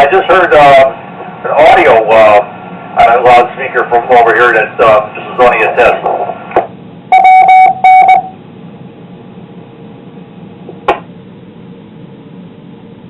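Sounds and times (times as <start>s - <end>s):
radio hiss: 0.0s - 6.7s
radio courtesy beep: 7.1s - 8.3s.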